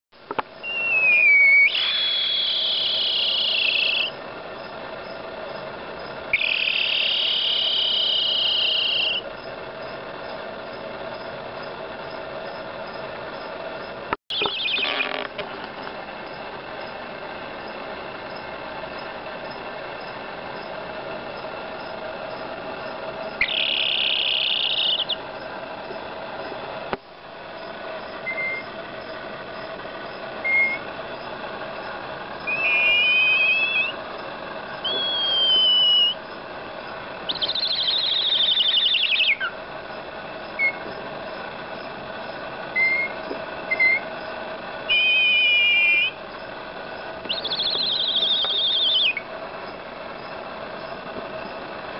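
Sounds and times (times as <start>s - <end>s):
faint steady hum: 0.2s - 51.9s
baby chick trilling and peeping: 0.7s - 5.2s, 6.4s - 9.2s, 14.3s - 15.2s, 23.3s - 25.2s, 37.3s - 39.6s, 47.2s - 49.2s.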